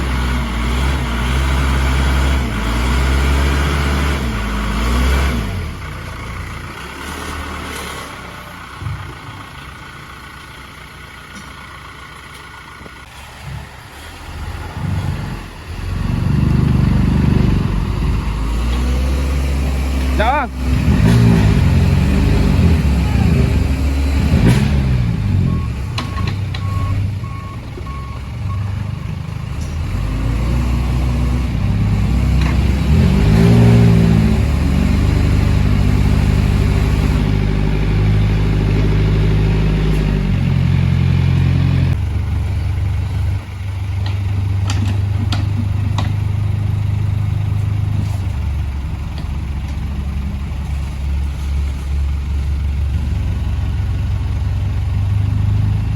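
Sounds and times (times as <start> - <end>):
heavy vehicle engines revving: 0.0 - 55.9
reversing beeper: 22.4 - 29.2.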